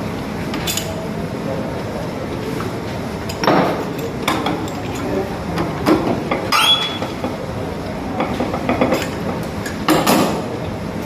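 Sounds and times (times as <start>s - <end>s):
short rising squeak: 6.5s - 7.1s.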